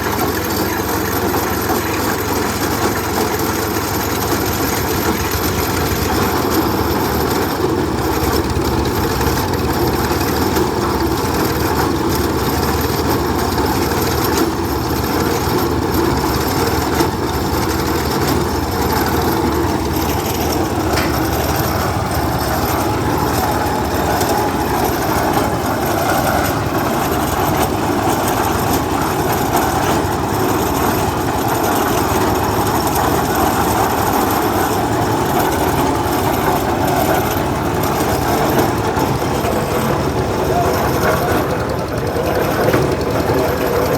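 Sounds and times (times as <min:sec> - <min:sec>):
engine running: 0:00.0 - 0:43.9.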